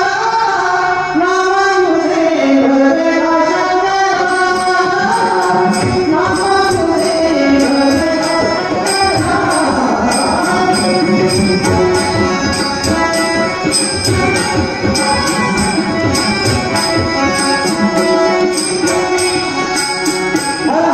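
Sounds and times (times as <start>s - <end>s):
harmonium melody: 0.0s - 20.9s
hand drum beat: 5.8s - 19.5s.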